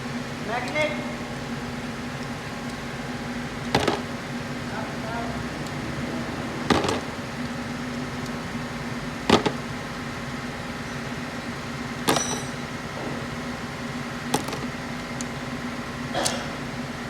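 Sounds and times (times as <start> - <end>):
steady hum: 0.0 - 17.0
metallic clinks of tools: 12.1 - 12.7.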